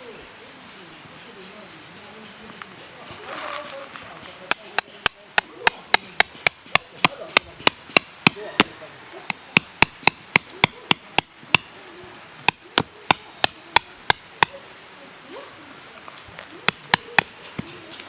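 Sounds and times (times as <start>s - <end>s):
hammer blows on metal: 0.6s - 11.7s, 12.5s - 14.7s, 16.7s - 17.8s.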